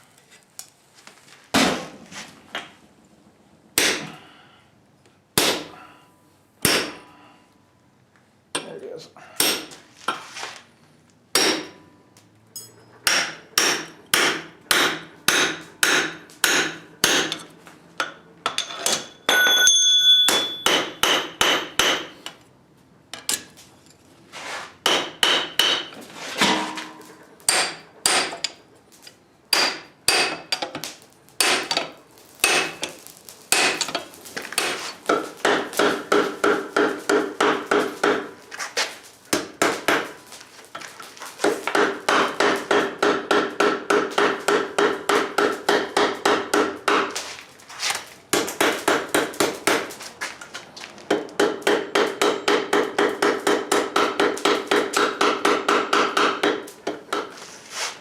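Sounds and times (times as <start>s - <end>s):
hammer striking metal on anvil: 3.8s - 4.1s, 5.4s - 5.8s, 6.6s - 7.2s, 9.4s - 9.8s, 11.3s - 11.9s, 12.6s - 22.4s, 24.8s - 28.6s, 29.5s - 30.7s, 31.4s - 32.9s, 33.5s - 34.0s, 34.6s - 38.4s, 41.7s - 47.1s, 51.1s - 57.3s
anvil ringing: 18.0s - 22.0s, 26.4s - 28.3s.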